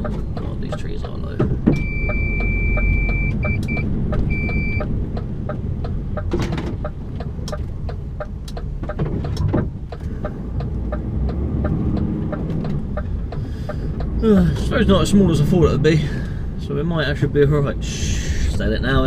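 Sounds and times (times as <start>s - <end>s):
truck engine running: 0.0s - 19.0s
high steady beep: 1.7s - 4.9s.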